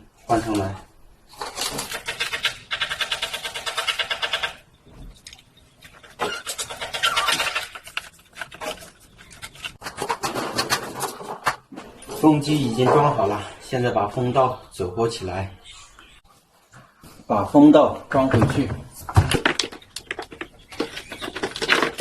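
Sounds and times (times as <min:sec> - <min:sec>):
rapid rattling: 0:01.5 - 0:04.6
handling noises: 0:04.8 - 0:13.5, 0:18.1 - 0:22.0.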